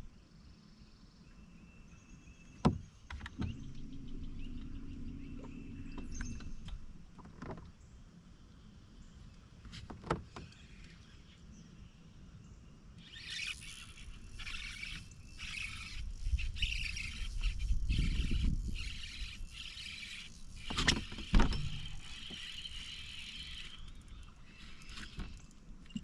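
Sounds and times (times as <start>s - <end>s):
electric motor humming: 13.0s - 25.6s.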